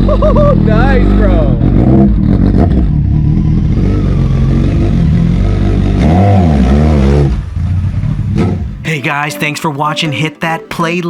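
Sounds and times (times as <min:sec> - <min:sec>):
motorcycle engine running loudly: 0:00.0 - 0:08.8.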